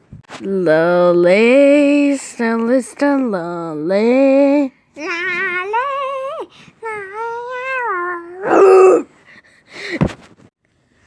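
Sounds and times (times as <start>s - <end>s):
child making whiny vocal cries: 5.6s - 9.1s.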